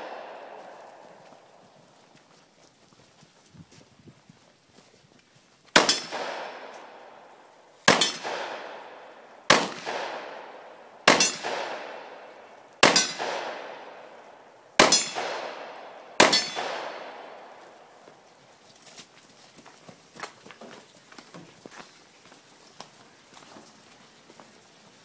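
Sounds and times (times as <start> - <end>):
pistol shots: 0.0 - 1.1, 5.8 - 7.2, 7.8 - 17.8
steel target clanging: 11.1 - 11.5, 12.8 - 13.2, 14.8 - 15.2, 16.2 - 16.6.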